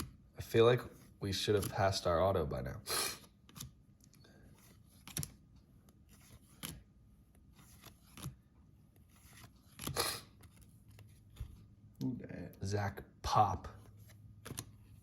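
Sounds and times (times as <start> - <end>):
cards swishing: 7.5 - 8.4.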